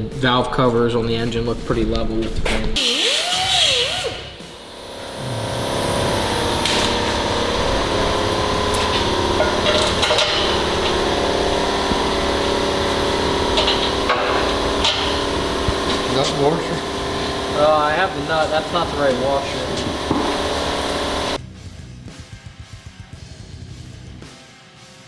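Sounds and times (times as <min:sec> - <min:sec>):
steady droning hum: 0:04.3 - 0:21.4
tool clicks and knocks: 0:07.8 - 0:17.5, 0:19.6 - 0:21.2.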